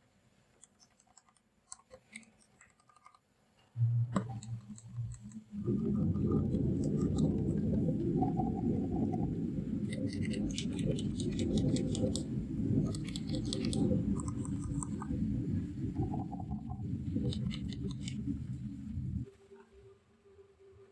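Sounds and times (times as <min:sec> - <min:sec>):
fast typing on mechanical keyboard: 0:00.6 - 0:03.2, 0:06.3 - 0:07.5, 0:09.9 - 0:15.1, 0:17.2 - 0:18.2.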